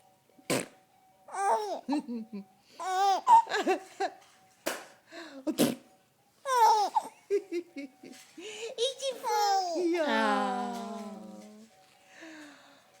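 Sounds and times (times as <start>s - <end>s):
child laughing and babbling: 8.8s - 10.0s.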